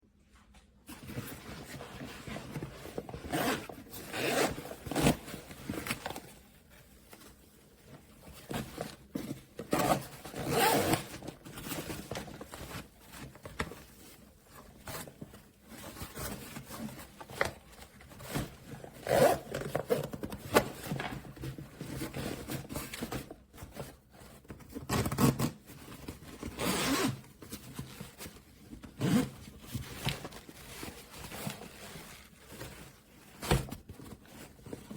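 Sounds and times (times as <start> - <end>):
bag handling scrapes: 0.9 - 6.4, 8.2 - 13.4, 18.2 - 23.9, 24.9 - 34.9
zipper being pulled: 3.3 - 5.2, 9.7 - 11.1, 19.0 - 19.5, 26.6 - 27.2, 29.0 - 29.3.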